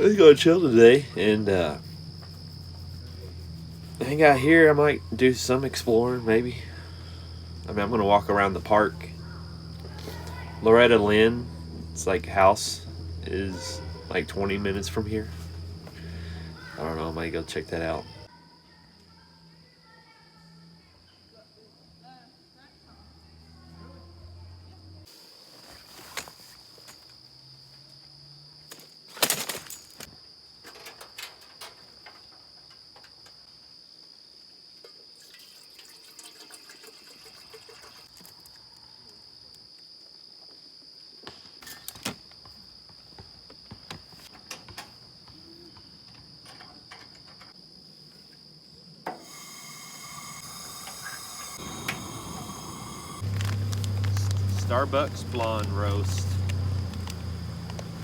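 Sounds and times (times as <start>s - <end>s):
insects trilling: 0.0s - 58.0s
hiss with steady tones: 49.1s - 56.1s.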